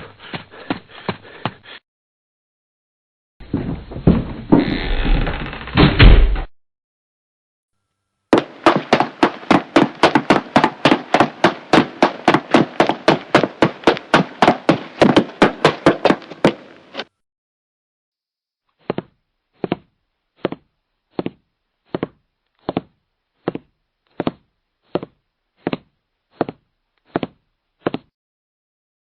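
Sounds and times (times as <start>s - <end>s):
muffled footsteps: 8.4s - 17.1s
quick jogging footsteps: 8.4s - 17.1s.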